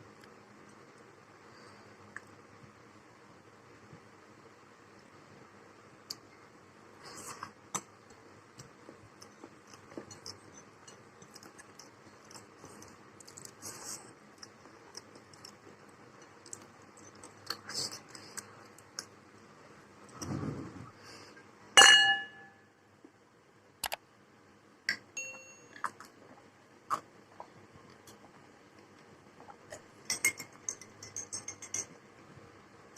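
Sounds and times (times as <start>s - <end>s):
person chewing: 9.1s - 19.2s
spoon clinking on a plate: 21.8s - 22.6s, 25.2s - 25.9s, 30.1s - 31.9s.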